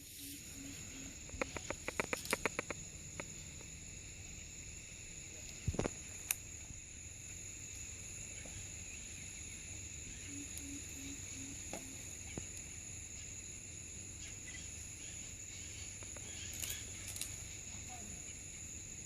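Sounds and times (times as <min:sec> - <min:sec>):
insects chirring: 0:00.0 - 0:19.0
faint clicks: 0:01.3 - 0:03.7.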